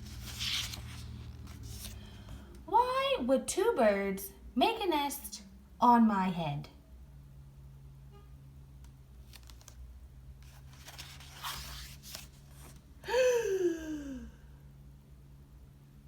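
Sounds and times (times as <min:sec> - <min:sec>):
book page rustling: 0:00.0 - 0:02.5, 0:09.2 - 0:12.9.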